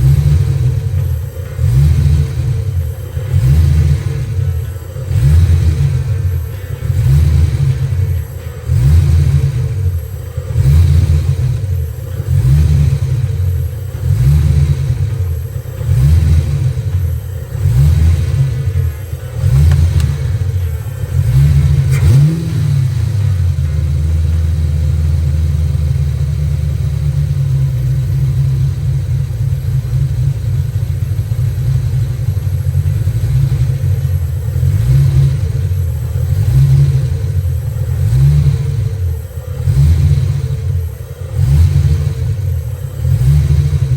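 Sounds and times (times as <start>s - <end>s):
car engine revving: 0.0s - 43.9s.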